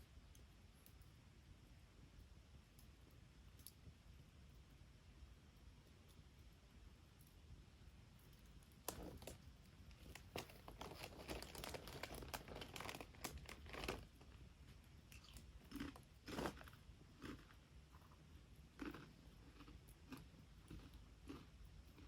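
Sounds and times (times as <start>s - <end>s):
dry kindling crackling: 8.4s - 18.2s.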